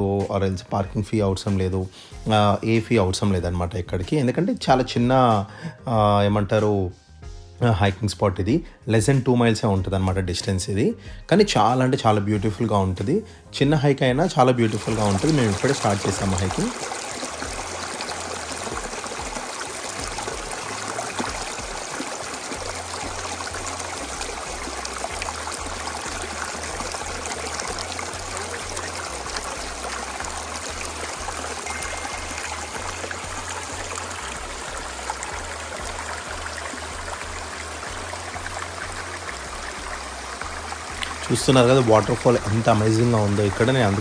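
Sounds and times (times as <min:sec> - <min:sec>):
waterfall rushing: 0:14.6 - 0:44.0.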